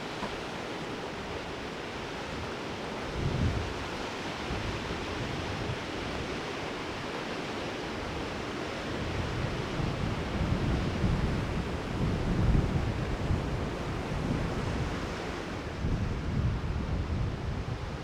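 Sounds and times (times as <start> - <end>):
wind buffeting microphone: 9.0 - 18.0.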